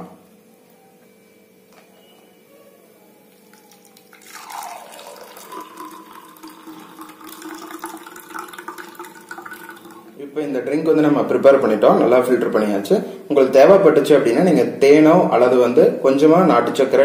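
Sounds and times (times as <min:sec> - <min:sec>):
liquid splashing and trickling: 0:03.4 - 0:10.1
juice pouring through a strainer: 0:03.4 - 0:10.2.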